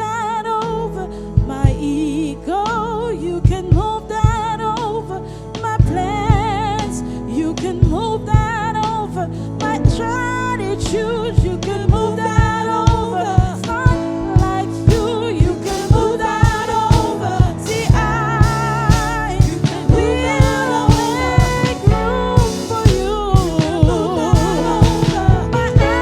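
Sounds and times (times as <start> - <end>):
person singing with vibrato: 9.9 - 26.0
steady drum beat: 10.8 - 26.0.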